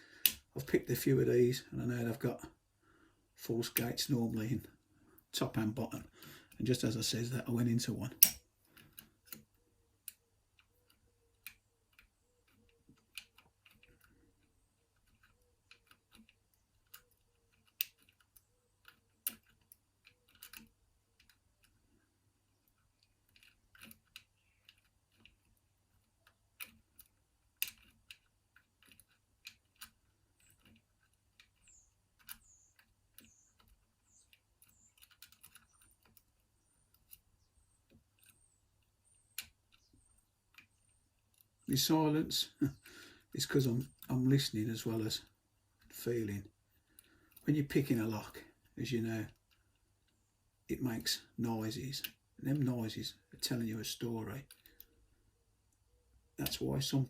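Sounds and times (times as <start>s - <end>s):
lock picking metallic clicks: 0.2s - 0.6s, 8.1s - 21.9s, 22.5s - 41.9s, 54.4s - 55.0s.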